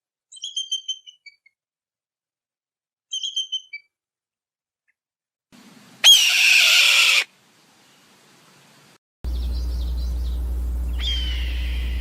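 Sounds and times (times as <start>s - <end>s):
hawk screaming: 6.0s - 7.3s, 11.0s - 12.0s
steady low hum: 9.2s - 12.0s
faint high chirps: 9.3s - 12.0s.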